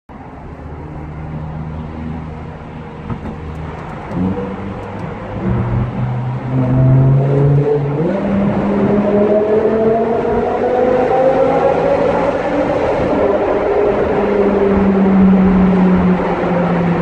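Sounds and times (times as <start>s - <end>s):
car engine revving under load: 3.0s - 16.3s.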